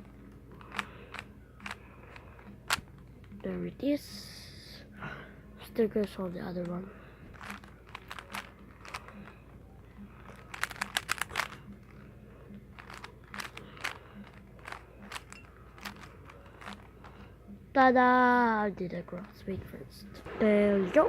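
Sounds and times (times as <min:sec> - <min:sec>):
puzzle cube layers clicking: 0:07.4 - 0:09.1, 0:10.2 - 0:11.6, 0:12.8 - 0:16.9.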